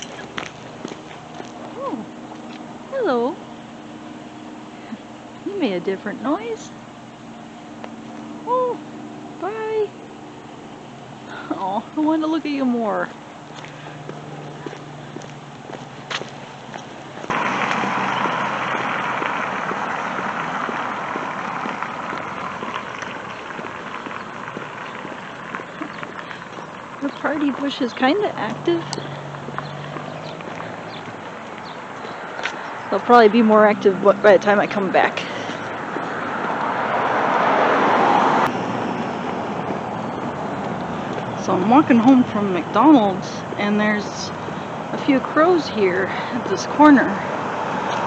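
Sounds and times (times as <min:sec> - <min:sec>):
street traffic hum: 0:00.0 - 0:48.0
car passing close by: 0:17.2 - 0:43.1, 0:46.0 - 0:48.0
flock of small birds twittering: 0:22.6 - 0:33.0.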